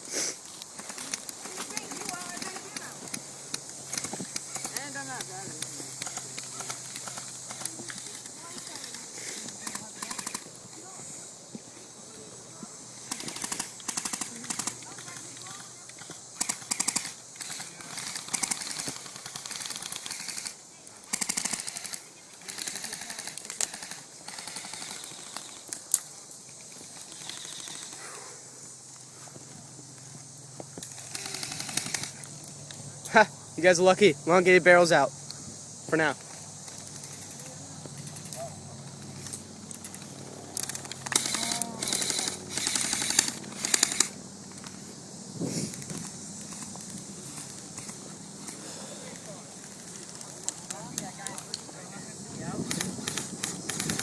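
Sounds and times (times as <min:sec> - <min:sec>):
airsoft guns firing bursts: 0:00.8 - 0:10.6, 0:13.0 - 0:25.7, 0:26.9 - 0:28.1, 0:30.9 - 0:32.2, 0:36.8 - 0:44.2, 0:52.6 - 0:54.0.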